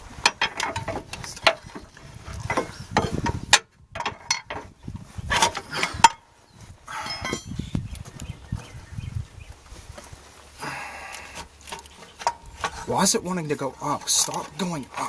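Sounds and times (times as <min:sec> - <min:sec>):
sharp metal knocks: 0:07.0 - 0:07.6.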